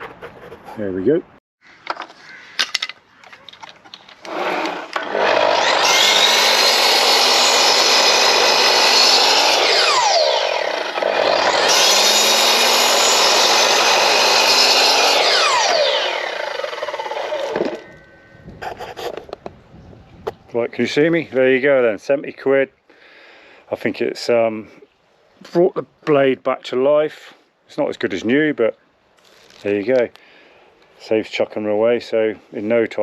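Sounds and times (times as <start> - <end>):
circular saw cutting wood: 4.2 - 17.9.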